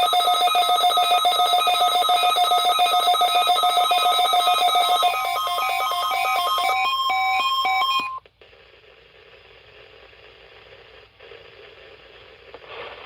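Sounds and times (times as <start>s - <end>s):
faint radio hiss: 8.2s - 13.0s.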